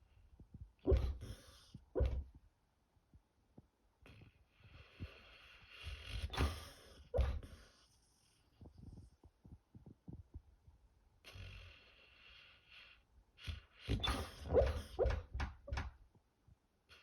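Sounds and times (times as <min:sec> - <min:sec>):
dog snoring: 0:00.8 - 0:02.3, 0:04.0 - 0:09.1, 0:11.2 - 0:15.3.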